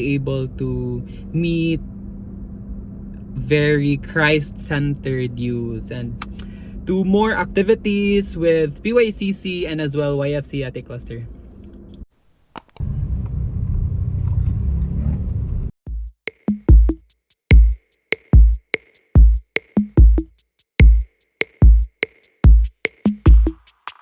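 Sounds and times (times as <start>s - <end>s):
electronic beat with kick drums: 15.9s - 24.0s.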